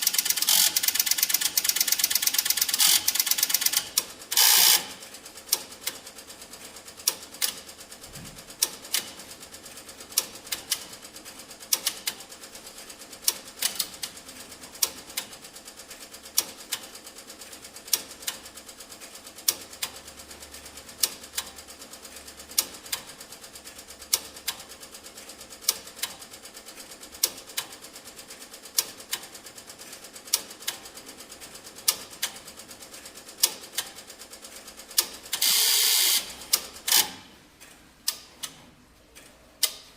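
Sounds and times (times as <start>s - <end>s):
teletype sharp clack: 0.0s - 7.7s, 8.5s - 11.0s, 11.6s - 12.3s, 13.2s - 15.4s, 28.7s - 31.1s, 31.8s - 37.3s
teletype mechanical clatter: 0.0s - 37.3s.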